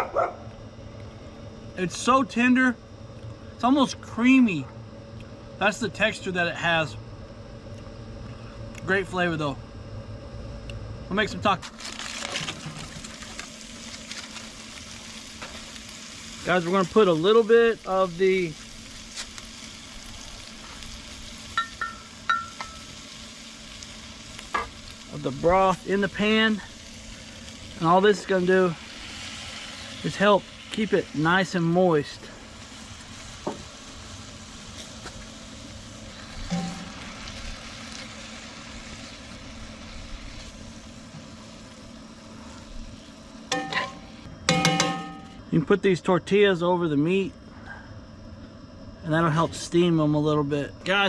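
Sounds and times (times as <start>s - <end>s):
grill fan humming: 0.0s - 51.0s
even hiss: 11.1s - 48.2s
meat sizzling in a pan: 11.7s - 41.9s.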